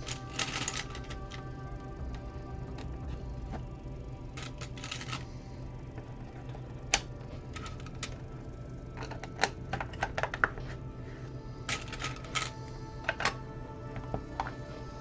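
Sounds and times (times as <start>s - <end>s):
plastic bricks clicking: 0.0s - 3.7s, 4.3s - 5.3s, 5.9s - 8.2s, 8.9s - 10.8s, 11.7s - 14.6s.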